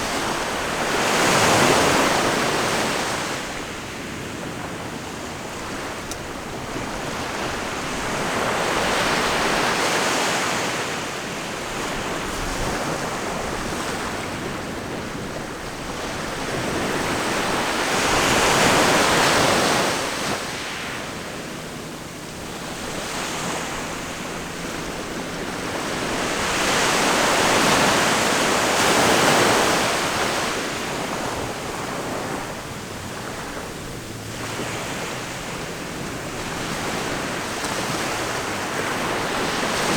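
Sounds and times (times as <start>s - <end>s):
waves breaking: 0.0s - 39.9s.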